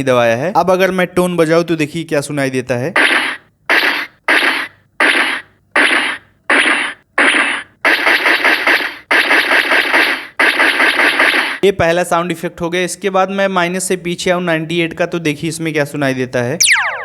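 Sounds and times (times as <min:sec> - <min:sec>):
keyboard hissing noise bursts: 0:03.0 - 0:11.6.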